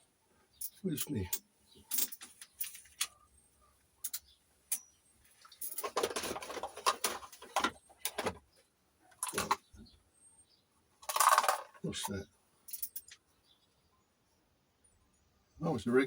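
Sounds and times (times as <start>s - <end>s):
objects clattering and rustling: 4.0s - 9.8s, 11.0s - 12.1s.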